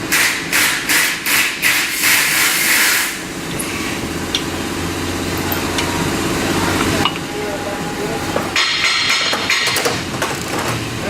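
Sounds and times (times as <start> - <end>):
compressed-air tool hissing: 0.1 - 4.2
steady low hum: 2.3 - 11.0.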